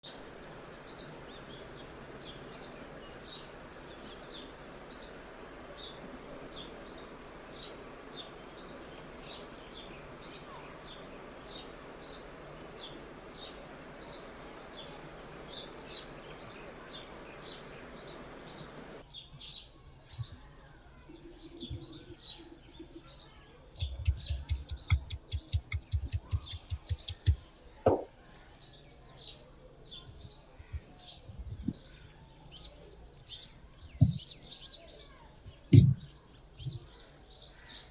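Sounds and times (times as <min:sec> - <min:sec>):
bird chirping: 0:17.4 - 0:28.0, 0:30.6 - 0:37.9
click: 0:23.8 - 0:27.4
loud sharp taps: 0:23.8 - 0:28.1, 0:35.7 - 0:36.1.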